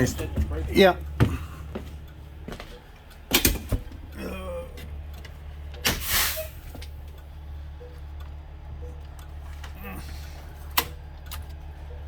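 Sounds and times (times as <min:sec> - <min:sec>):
steady low hum: 0:00.0 - 0:12.0
short hiss: 0:06.0 - 0:06.6.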